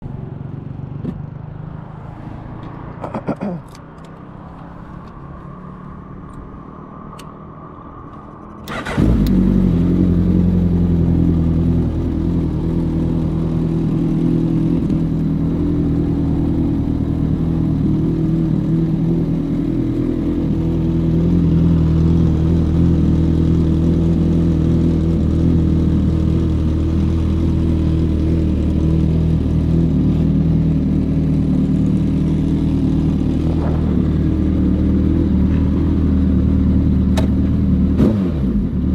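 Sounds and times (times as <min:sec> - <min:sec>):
motorcycle engine starting and idling: 0:08.2 - 0:38.9.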